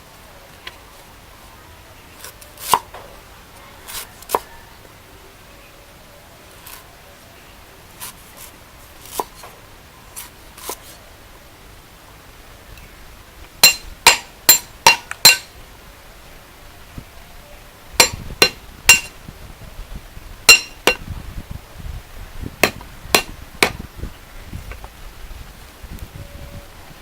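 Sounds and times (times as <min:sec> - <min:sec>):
sharp ringing blows: 0:20.5 - 0:21.0.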